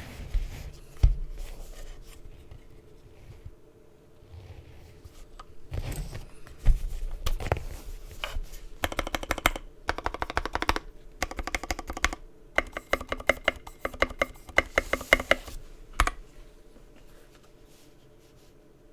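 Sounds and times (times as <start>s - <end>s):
mechanical keyboard typing: 8.8s - 16.2s.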